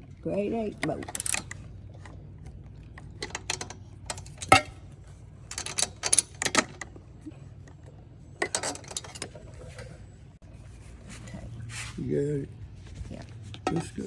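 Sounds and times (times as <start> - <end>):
wrench clicking on metal bolts: 0.8 - 1.6, 3.2 - 4.8, 5.5 - 6.9, 8.4 - 9.4.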